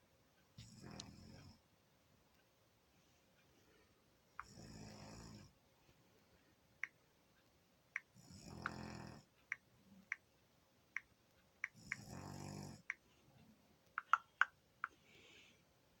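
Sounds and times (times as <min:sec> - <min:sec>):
snoring: 0:00.6 - 0:01.6, 0:04.4 - 0:05.5, 0:08.2 - 0:09.3, 0:11.8 - 0:13.0.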